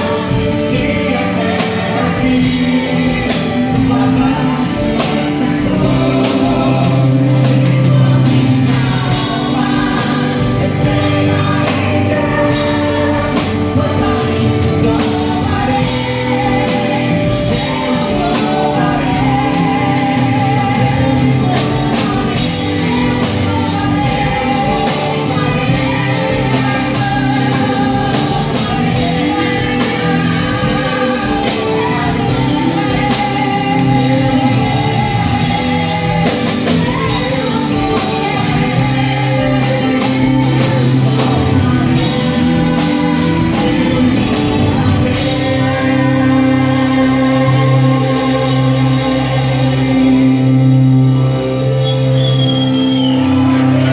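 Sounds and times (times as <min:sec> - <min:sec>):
pop-rock song with band: 0:00.0 - 0:53.9.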